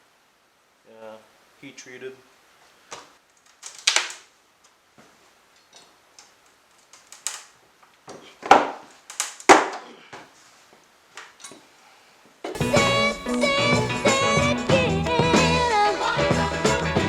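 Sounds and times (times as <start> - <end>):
wooden pallet cracking: 3.3 - 4.3, 6.2 - 9.9.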